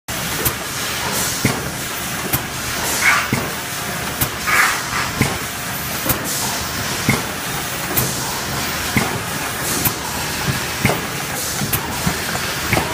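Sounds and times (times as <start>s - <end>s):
constant mechanical noise: 0.1s - 12.9s
short hisses: 4.4s - 5.2s.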